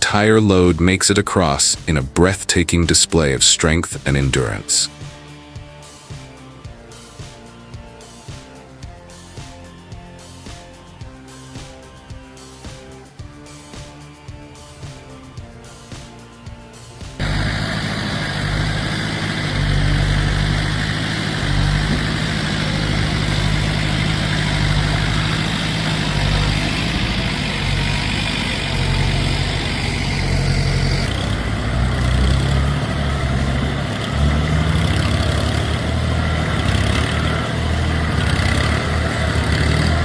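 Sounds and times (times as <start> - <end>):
large engine running steadily: 17.2 - 40.0.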